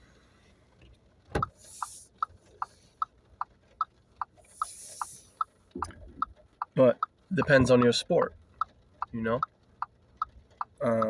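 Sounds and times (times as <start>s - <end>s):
turn signal ticking: 0.7s - 11.0s.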